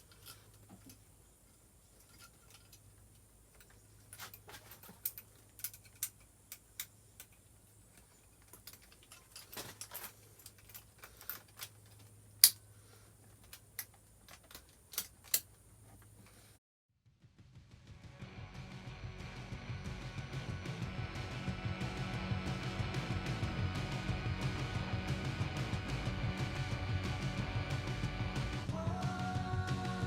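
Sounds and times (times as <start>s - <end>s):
small tools clicking and tapping: 1.9s - 12.6s, 13.2s - 16.4s
steady low hum: 18.0s - 30.0s.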